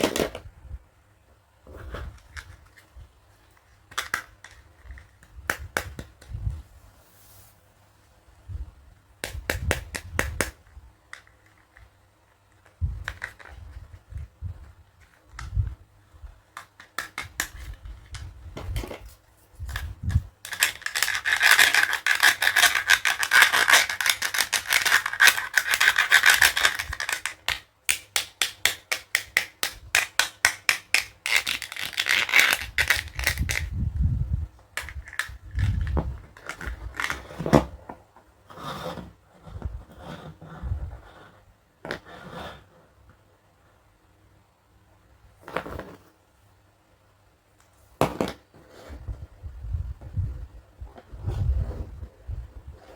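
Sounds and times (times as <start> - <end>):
plastic toy pieces clicking: 20.4 - 33.7
plastic scraping: 34.8 - 42.7.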